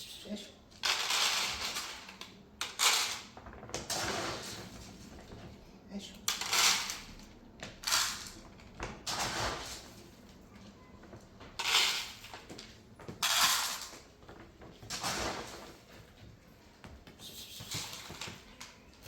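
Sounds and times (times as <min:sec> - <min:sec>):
scraping or rustling noises: 0:00.1 - 0:05.6, 0:07.8 - 0:10.2, 0:11.0 - 0:16.4, 0:17.1 - 0:19.0.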